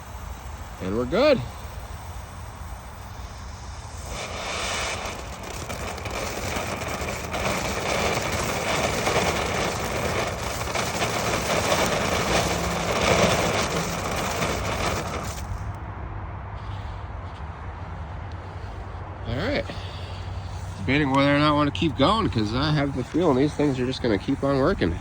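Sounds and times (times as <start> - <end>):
fountain firework hissing: 0.0 - 15.8, 19.5 - 25.0.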